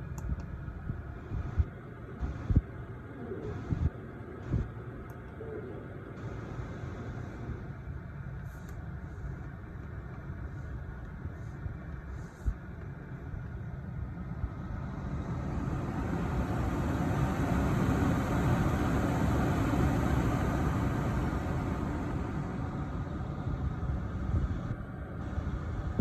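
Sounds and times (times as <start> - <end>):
air-conditioning blower rushing: 6.2 - 26.0.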